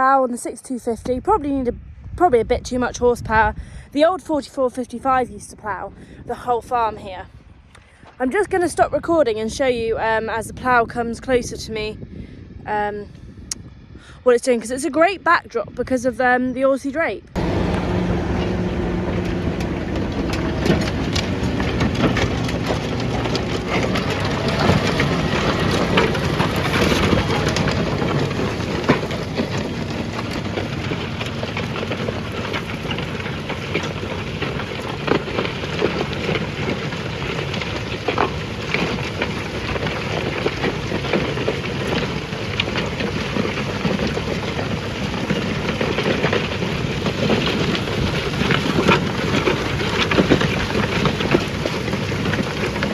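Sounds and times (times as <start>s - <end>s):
tractor engine hum: 17.2s - 52.9s.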